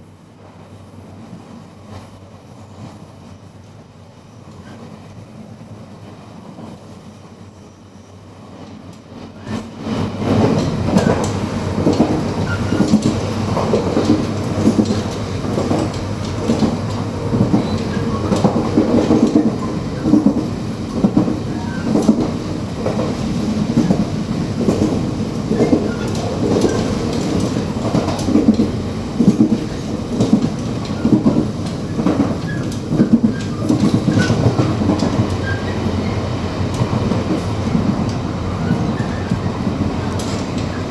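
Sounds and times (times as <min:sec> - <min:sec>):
train rumble: 0:00.0 - 0:40.9
train knocks and clunks: 0:08.1 - 0:40.9.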